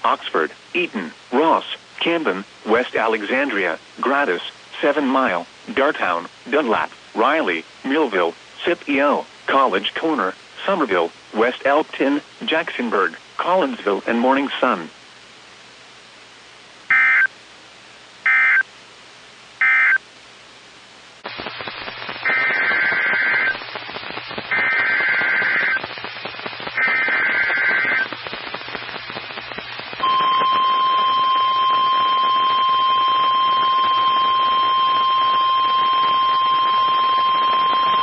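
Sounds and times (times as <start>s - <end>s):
shrill digital data bursts: 21.4s - 29.3s
piercing warning alarm tone: 30.0s - 38.0s.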